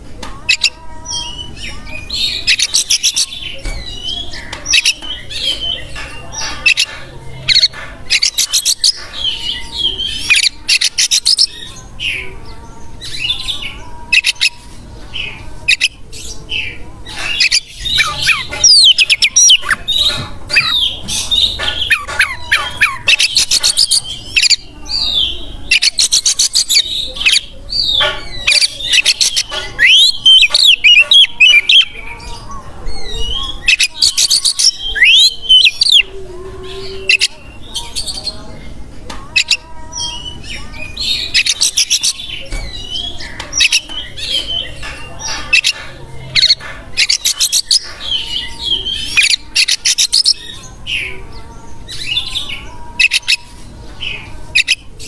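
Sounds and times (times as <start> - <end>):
songbird singing with trills: 0.5 - 38.6.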